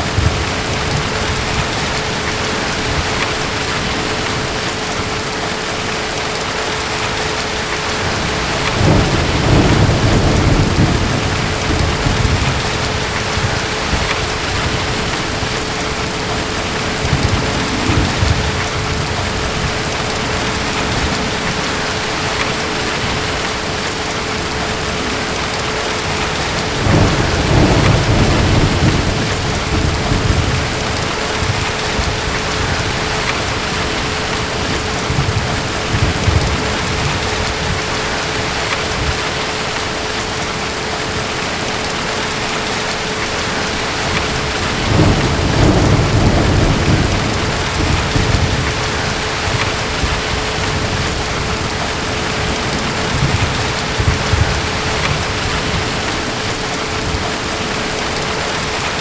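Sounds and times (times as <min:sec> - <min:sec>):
distant thunder rumbling: 0:00.0 - 0:39.8, 0:41.6 - 0:58.9
steady heavy rain: 0:00.0 - 0:59.0.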